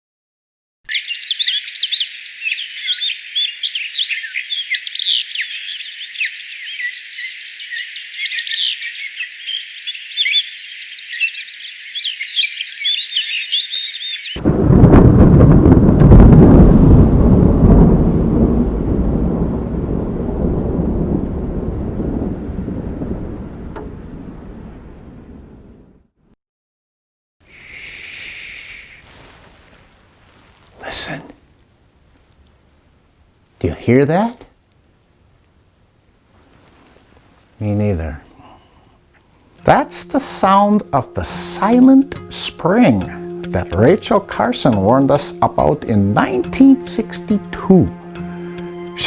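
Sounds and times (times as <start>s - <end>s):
songbirds chirping and singing: 0.9s - 14.4s
loud deep rumble: 14.4s - 26.1s.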